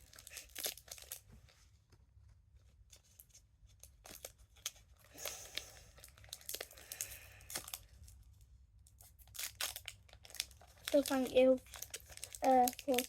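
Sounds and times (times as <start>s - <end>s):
foil wrapper crinkling and tearing: 0.0s - 1.3s, 3.8s - 8.3s, 8.9s - 13.0s.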